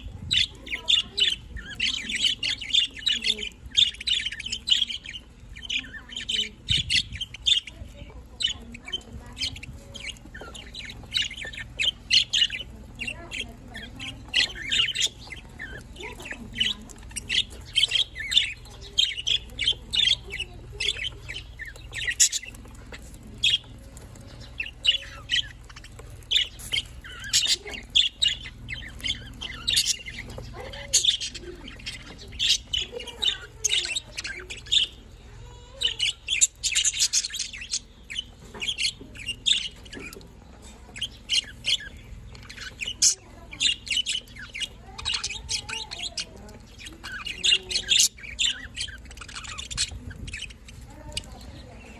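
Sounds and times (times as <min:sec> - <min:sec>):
budgerigars chirping and chattering: 0:00.0 - 0:51.9.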